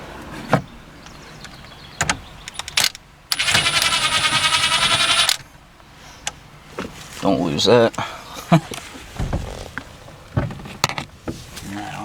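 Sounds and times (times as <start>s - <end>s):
cordless power tool whining: 3.3s - 5.4s.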